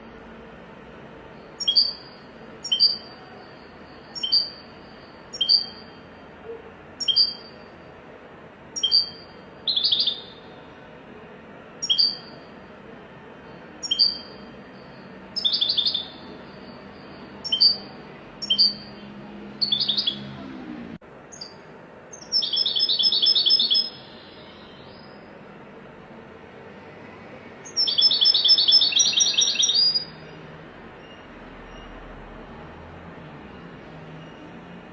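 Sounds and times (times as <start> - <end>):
bird trills: 1.4 - 7.8, 8.8 - 10.6, 11.8 - 12.5, 13.6 - 19.0, 19.6 - 20.3, 21.3 - 25.3, 27.6 - 30.4
goldfinch calling: 1.5 - 3.2, 4.1 - 6.0, 7.0 - 7.6, 8.8 - 10.5, 11.8 - 12.5, 13.8 - 19.0, 19.6 - 20.2, 21.3 - 25.2, 27.7 - 30.2.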